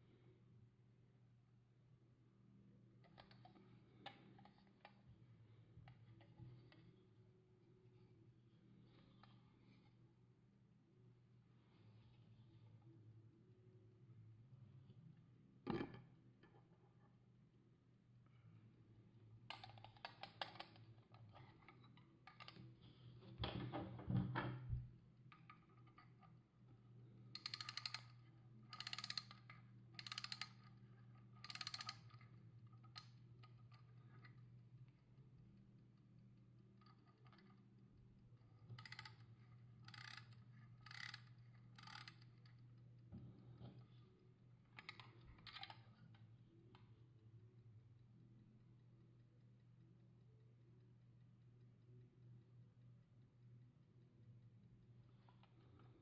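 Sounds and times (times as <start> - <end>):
clock winding ratchet clicking: 27.3 - 30.8, 31.4 - 34.3, 38.6 - 42.6.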